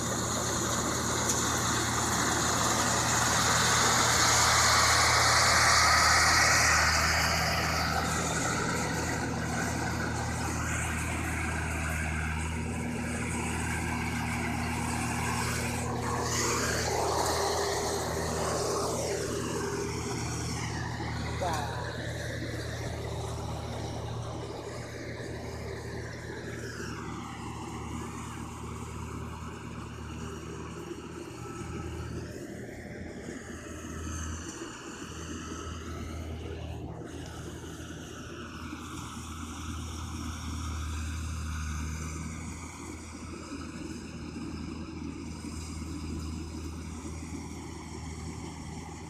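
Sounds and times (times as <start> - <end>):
harvester engine hum: 0.0 - 49.0.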